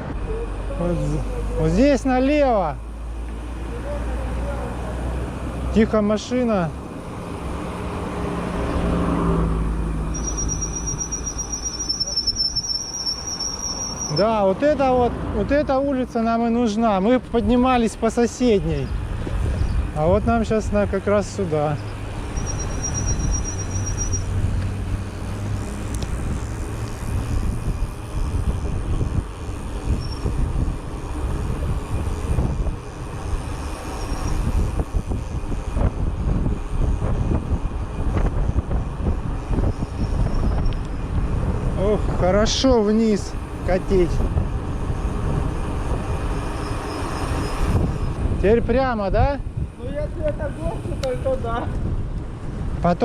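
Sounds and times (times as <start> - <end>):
car passing by: 3.0 - 11.2
cricket trilling: 10.1 - 14.2, 21.8 - 24.3, 33.5 - 34.4, 46.4 - 47.7
wind buffeting microphone: 18.6 - 53.0.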